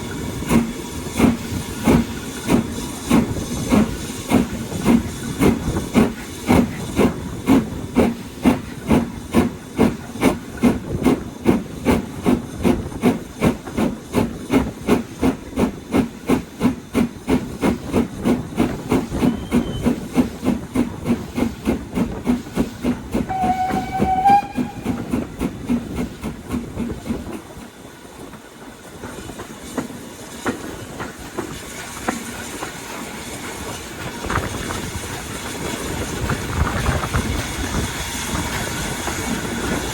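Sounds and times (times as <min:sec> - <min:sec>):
steady steam hiss: 0:00.0 - 0:39.9
steam locomotive exhaust beats: 0:00.0 - 0:39.9
steam whistle: 0:23.3 - 0:25.1.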